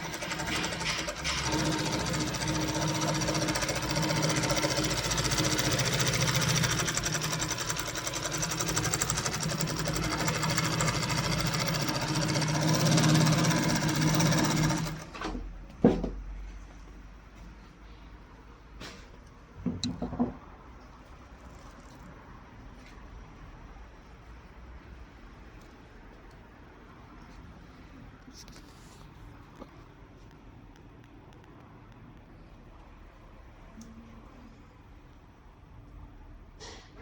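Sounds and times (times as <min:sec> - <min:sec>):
sewing machine stitching: 0:00.0 - 0:15.4.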